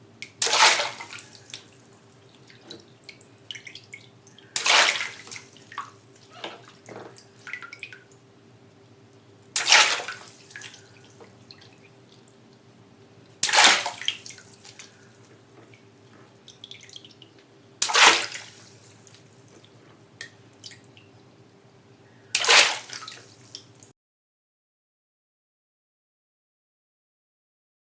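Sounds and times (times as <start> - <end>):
water dripping: 0.2 - 23.9
water balloons bursting: 0.4 - 1.6, 4.5 - 5.5, 13.4 - 14.3, 22.4 - 23.0.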